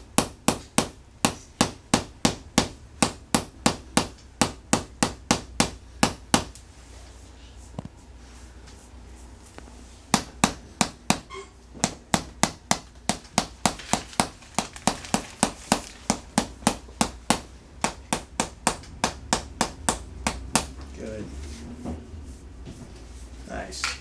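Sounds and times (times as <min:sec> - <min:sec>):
tapping tool striking: 0:10.1 - 0:20.8.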